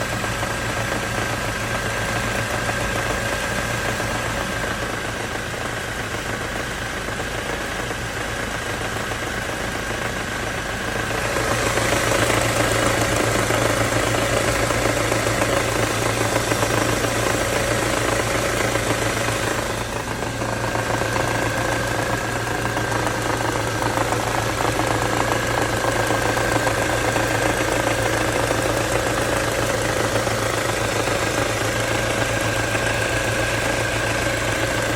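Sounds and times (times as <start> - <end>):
car engine idling with knock: 0.0 - 34.9.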